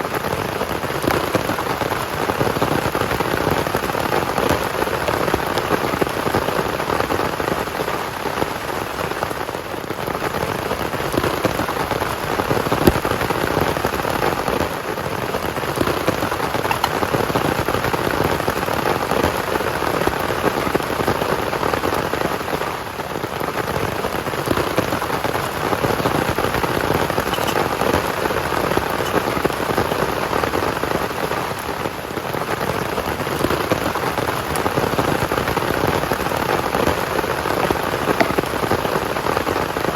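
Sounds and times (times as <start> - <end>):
heavy rain: 0.0 - 39.9
knock: 27.3 - 27.6.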